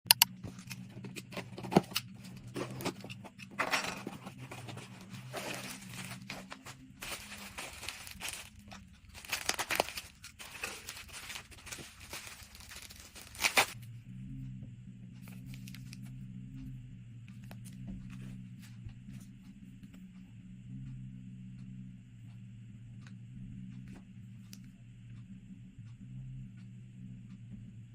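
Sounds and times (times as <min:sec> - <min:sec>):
steady low hum: 0:00.1 - 0:27.9
packaging tearing and crinkling: 0:04.0 - 0:13.8.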